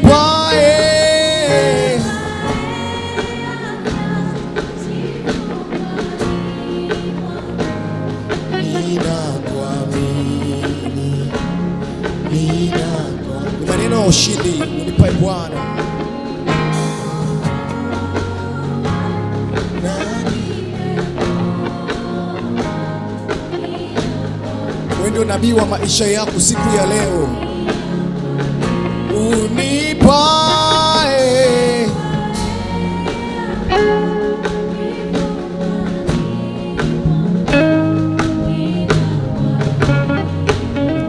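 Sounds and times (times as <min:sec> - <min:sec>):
bass line: 0:00.0 - 0:04.9, 0:24.0 - 0:41.0
drum strikes: 0:00.0 - 0:13.0, 0:13.6 - 0:41.0
gospel band playing: 0:00.0 - 0:41.0.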